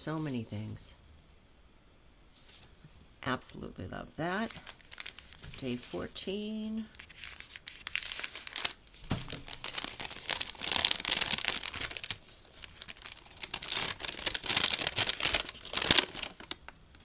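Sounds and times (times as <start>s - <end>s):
packaging crinkling and tearing: 4.4s - 6.1s, 6.9s - 16.8s.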